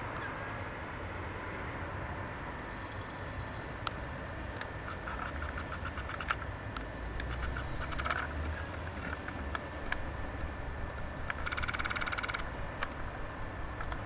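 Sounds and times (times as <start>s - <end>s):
steady low rumble: 0.0s - 14.0s
rattling pulse trains: 3.8s - 14.0s
short clicks: 11.2s - 13.0s.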